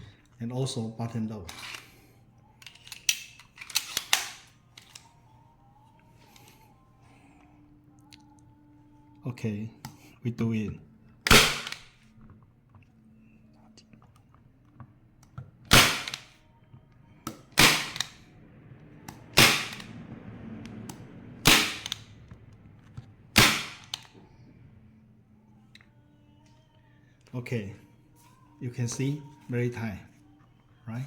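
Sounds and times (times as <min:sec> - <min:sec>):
staple gun snapping: 0:02.6 - 0:05.0, 0:11.3 - 0:11.9, 0:15.7 - 0:16.4, 0:17.3 - 0:18.2, 0:21.5 - 0:22.0, 0:23.4 - 0:24.1.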